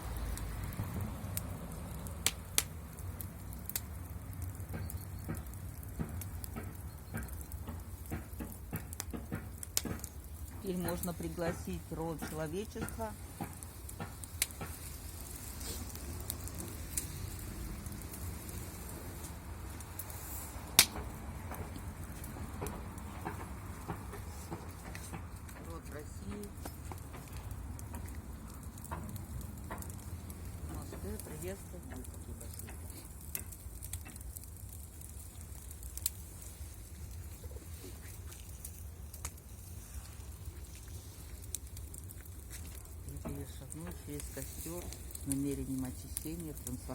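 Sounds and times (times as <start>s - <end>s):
low steady rumble: 0.0s - 8.0s
sharp pops of fire: 0.0s - 46.9s
wood fire crackling: 0.0s - 46.9s.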